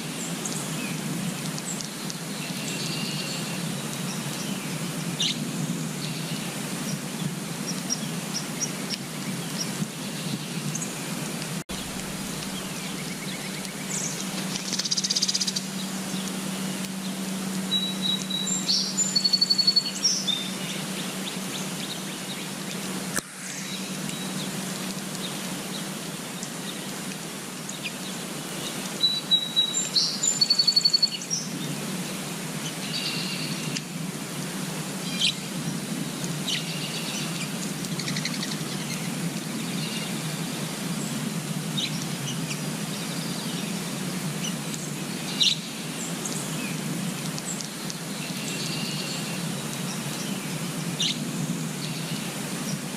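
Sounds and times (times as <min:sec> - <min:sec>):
birds chirping and trilling: 0:00.0 - 0:27.0, 0:27.6 - 0:33.8, 0:35.0 - 0:41.2, 0:41.8 - 0:52.8
low background rumble: 0:11.7 - 0:22.5.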